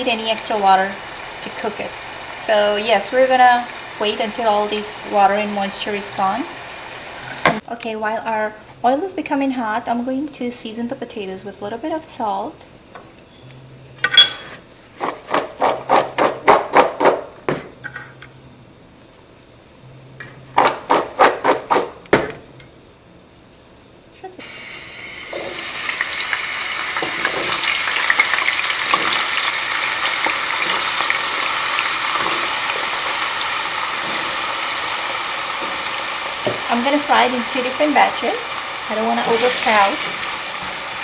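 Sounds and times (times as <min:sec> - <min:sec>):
deep frying sizzle: 0:00.0 - 0:07.6, 0:24.4 - 0:41.0
potato chunks being mixed: 0:27.0 - 0:41.0.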